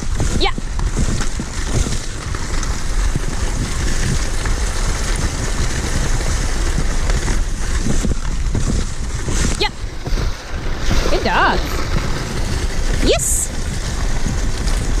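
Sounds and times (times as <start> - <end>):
sled runners hissing over snow: 0.0 - 15.0
wind buffeting microphone: 0.0 - 15.0.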